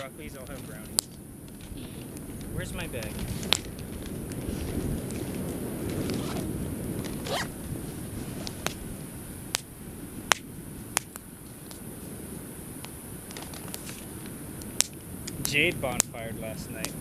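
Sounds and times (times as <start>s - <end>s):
bonfire popping: 0.0s - 17.0s
bag zipper being pulled: 5.8s - 6.5s, 7.1s - 7.6s.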